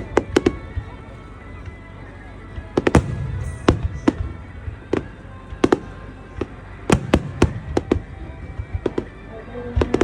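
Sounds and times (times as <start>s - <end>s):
fireworks bangs: 2.8s - 5.9s, 6.9s - 9.0s.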